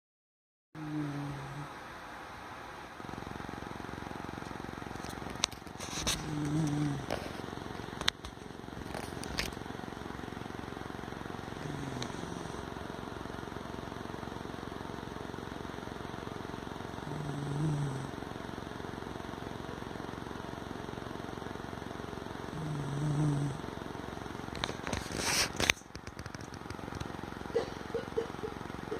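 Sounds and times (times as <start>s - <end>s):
dog snoring: 0.8s - 1.8s, 5.0s - 7.5s, 11.4s - 12.8s, 17.0s - 18.2s, 22.4s - 23.8s, 27.5s - 28.9s.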